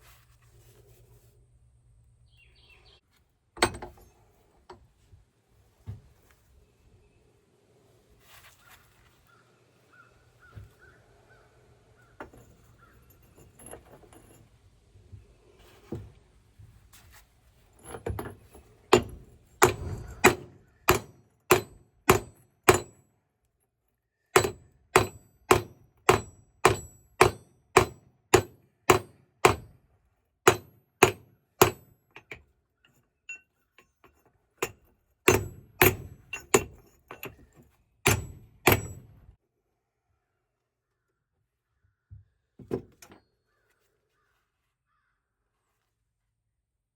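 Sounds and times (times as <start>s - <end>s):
faint metal clatter: 3.6s - 5.1s, 12.0s - 21.0s, 31.6s - 39.4s.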